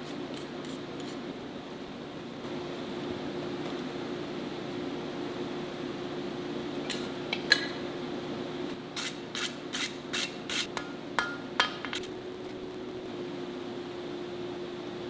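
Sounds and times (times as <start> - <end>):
steady hum: 10.7 - 15.0
hammer striking steel on anvil: 10.8 - 12.0.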